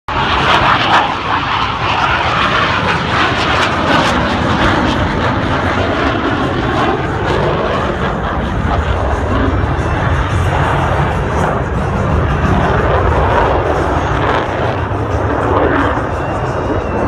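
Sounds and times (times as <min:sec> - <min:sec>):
jet aircraft engine roar: 0:00.1 - 0:17.0.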